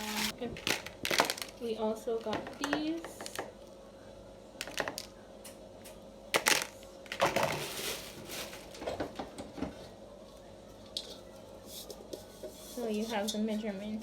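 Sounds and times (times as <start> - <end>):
plastic packaging crinkling: 0.0 - 2.6, 6.4 - 9.2.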